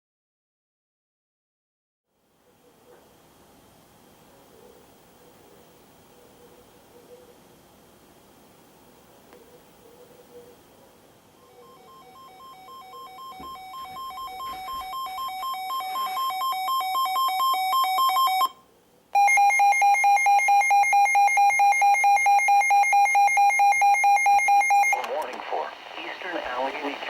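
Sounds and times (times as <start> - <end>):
pulsing two-tone alarm beep: 11.4 - 18.6, 19.2 - 25.0
rapid single-tone alarm beep: 11.4 - 18.6, 19.2 - 25.0.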